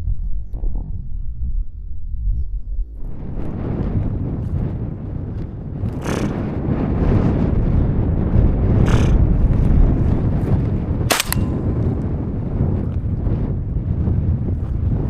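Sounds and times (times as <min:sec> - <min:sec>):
wind buffeting microphone: 0:00.0 - 0:15.0
sharp crack: 0:11.1 - 0:11.8.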